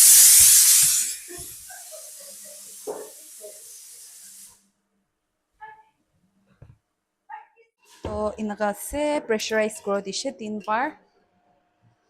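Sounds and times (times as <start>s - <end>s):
pressure cooker venting steam: 0.0s - 4.6s.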